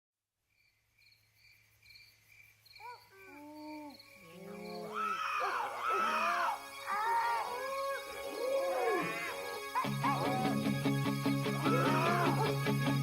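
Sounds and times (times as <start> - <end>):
crickets chirping: 0.5 - 12.8
long rising and falling howls: 4.3 - 12.7.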